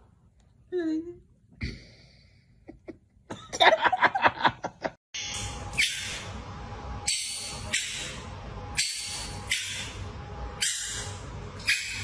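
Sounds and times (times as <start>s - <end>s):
faint hum: 4.6s - 12.0s.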